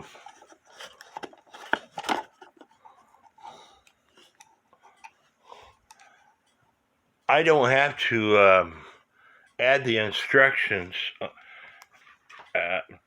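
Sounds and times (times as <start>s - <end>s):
paper rustling: 0.0s - 5.0s.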